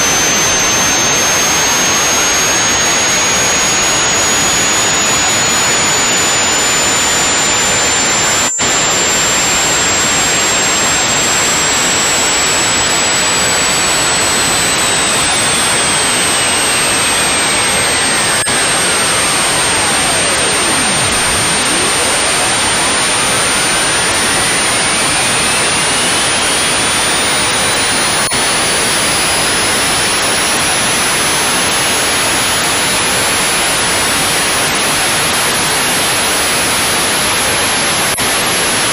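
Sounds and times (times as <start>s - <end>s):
harsh static noise: 0.0s - 38.9s
high whistle rising: 11.2s - 27.5s.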